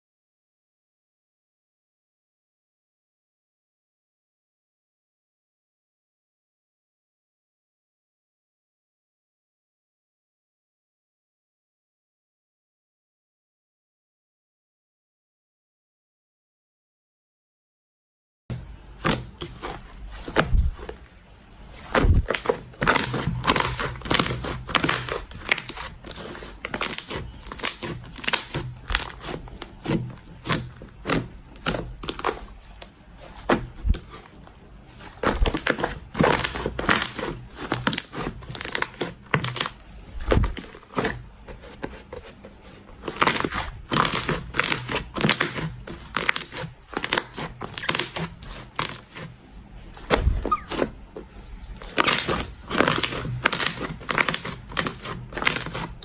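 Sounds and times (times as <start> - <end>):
slime squished by hand: 18.6 - 41.2.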